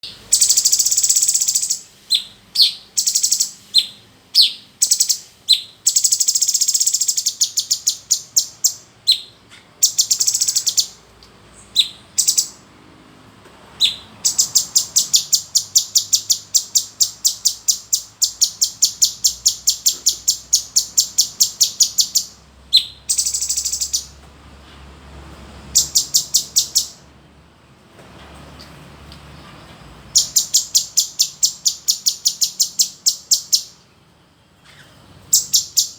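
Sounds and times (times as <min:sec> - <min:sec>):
bird singing sharp chattering notes: 0:00.0 - 0:11.0, 0:11.6 - 0:12.6, 0:13.8 - 0:24.1, 0:30.1 - 0:33.8, 0:34.7 - 0:35.9.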